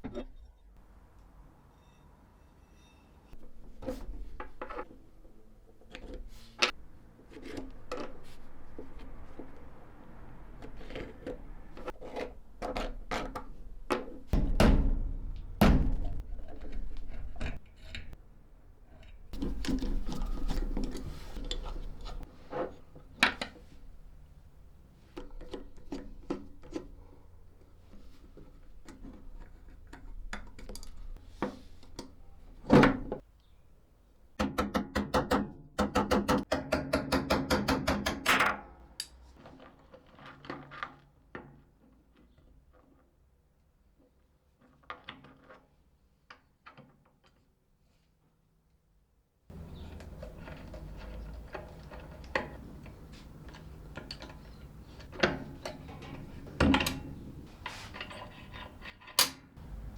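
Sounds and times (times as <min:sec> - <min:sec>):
clicks and knocks on metal parts: 0:49.5 - 0:59.7.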